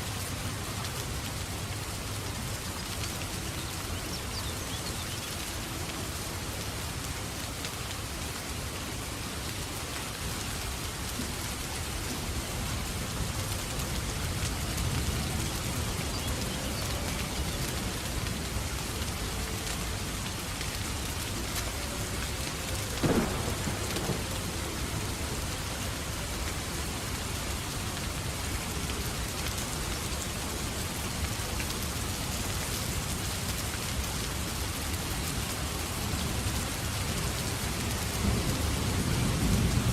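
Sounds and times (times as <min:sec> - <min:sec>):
heavy rain: 0:00.0 - 0:39.9
wood fire crackling: 0:12.2 - 0:32.4
low rumbling thunder: 0:23.0 - 0:25.5, 0:38.2 - 0:39.9.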